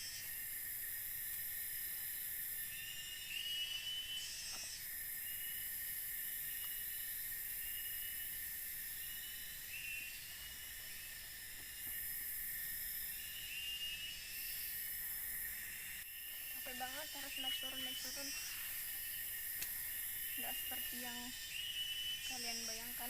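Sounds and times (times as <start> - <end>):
insects buzzing drone: 0.0 - 23.0.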